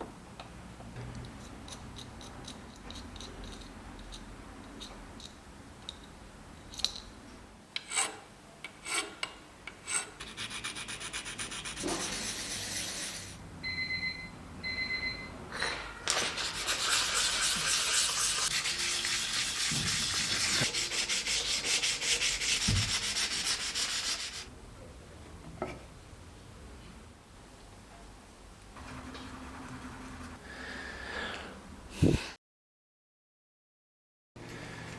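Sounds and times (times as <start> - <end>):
hand sanding rubbing strokes: 9.9 - 13.4, 16.2 - 24.5.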